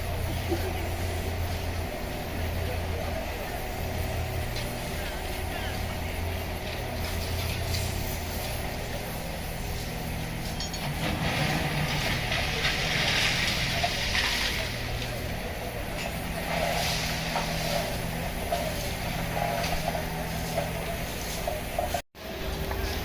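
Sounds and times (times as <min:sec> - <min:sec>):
hiss: 0:00.0 - 0:10.6, 0:11.9 - 0:22.0
machinery engines humming: 0:00.0 - 0:23.0.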